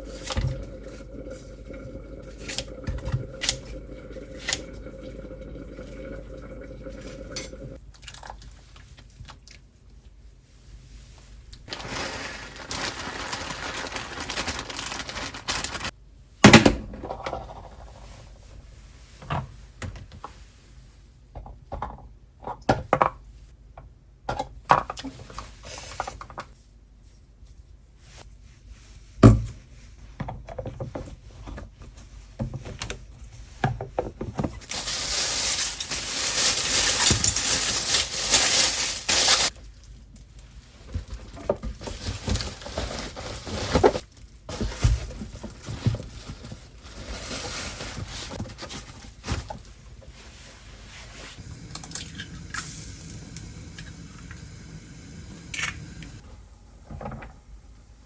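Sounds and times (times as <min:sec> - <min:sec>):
utensils and dishes clattering: 0:34.6 - 0:39.5.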